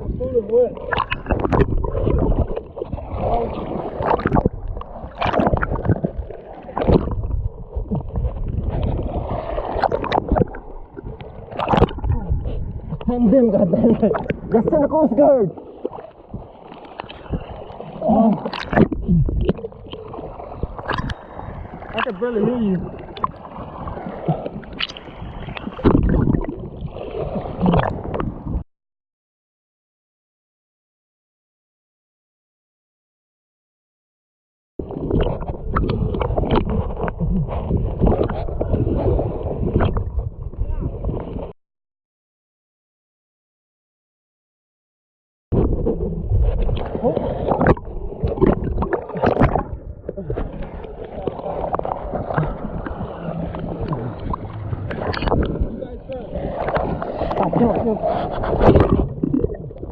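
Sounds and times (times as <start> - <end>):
constant water rumble: 0.0 - 28.6, 34.8 - 41.5, 45.5 - 59.9
seawater sloshing and splashing: 0.6 - 28.6, 45.6 - 59.9.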